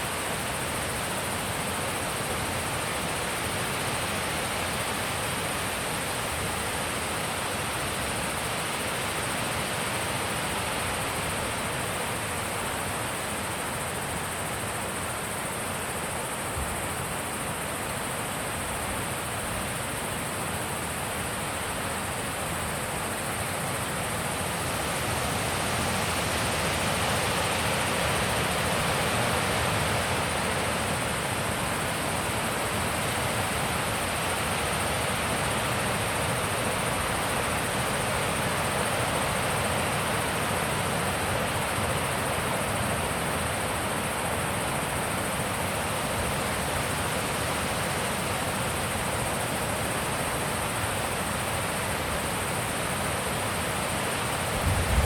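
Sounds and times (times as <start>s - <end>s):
wind blowing: 54.5s - 55.0s.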